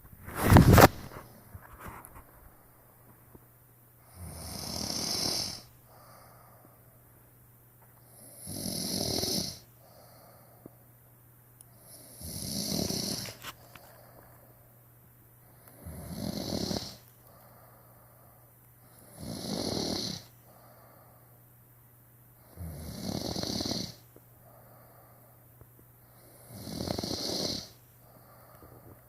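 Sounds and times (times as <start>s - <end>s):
person snoring: 4.1s - 6.4s, 8.1s - 10.4s, 11.8s - 13.9s, 15.7s - 17.7s, 19.0s - 21.0s, 22.4s - 25.0s, 26.2s - 29.0s.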